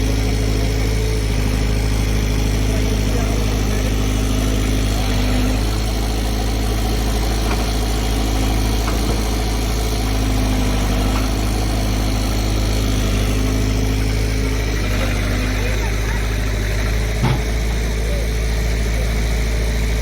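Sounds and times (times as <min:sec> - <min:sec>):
diesel engine running: 0:00.0 - 0:20.0.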